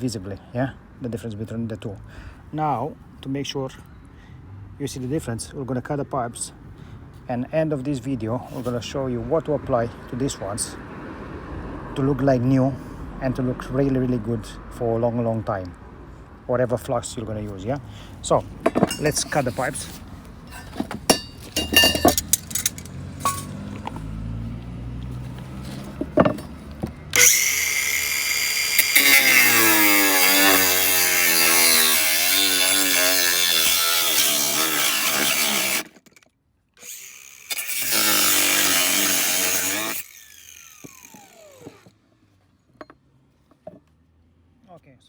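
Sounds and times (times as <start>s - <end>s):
power tool cutting copper pipe: 18.7s - 20.0s, 21.1s - 24.0s, 26.2s - 36.2s, 36.8s - 41.9s.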